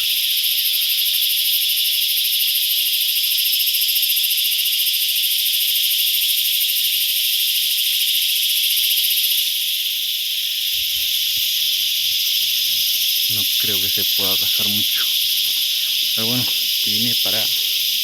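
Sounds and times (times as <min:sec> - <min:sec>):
cicadas buzzing: 0:00.0 - 0:18.0.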